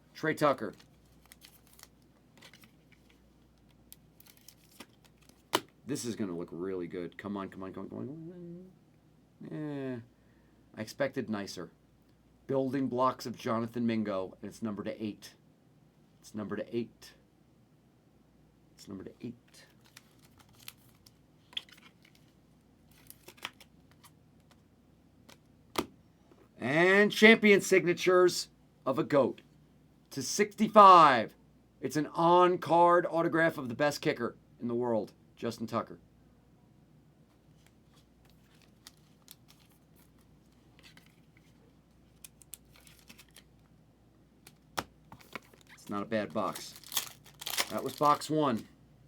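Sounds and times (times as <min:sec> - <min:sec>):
cards rustling and clicking: 0:00.6 - 0:05.8, 0:19.7 - 0:24.6, 0:37.5 - 0:43.7, 0:44.4 - 0:48.7.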